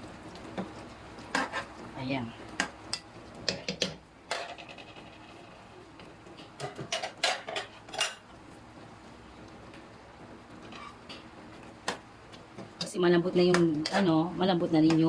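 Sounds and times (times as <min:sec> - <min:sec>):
metal utensil scraping a pan: 0:10.6 - 0:11.0.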